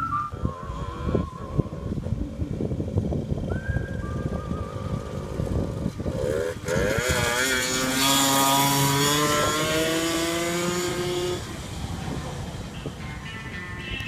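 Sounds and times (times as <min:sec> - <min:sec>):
engine revving: 0:04.8 - 0:13.4.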